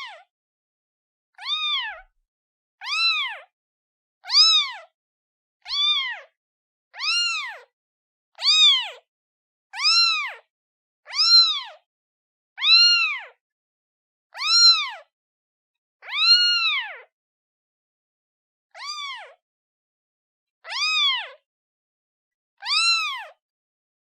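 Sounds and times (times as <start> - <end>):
kitten meowing: 1.4 - 2.1, 2.8 - 3.5, 4.2 - 4.9, 5.6 - 6.4, 7.0 - 7.7, 8.4 - 9.0, 9.8 - 10.4, 11.1 - 11.8, 12.6 - 13.4, 14.3 - 15.1, 16.0 - 17.1, 18.8 - 19.4, 20.6 - 21.4, 22.6 - 23.4.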